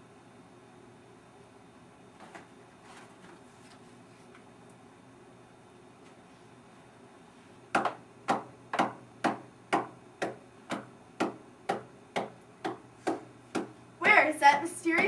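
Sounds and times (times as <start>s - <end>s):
sharp steady thumping knocks: 7.7s - 15.0s.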